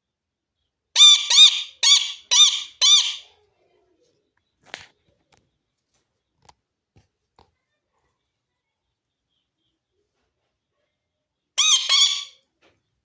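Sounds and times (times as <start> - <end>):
parrot squawking: 1.0 - 3.3, 11.6 - 12.4.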